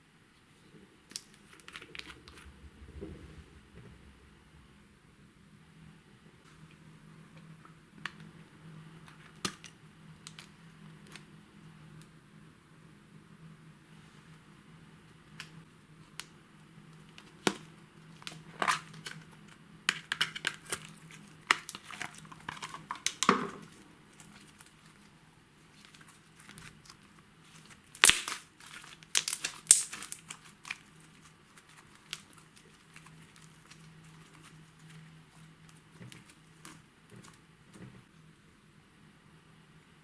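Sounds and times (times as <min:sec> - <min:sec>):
slime popping and crackling: 0:25.7 - 0:37.3.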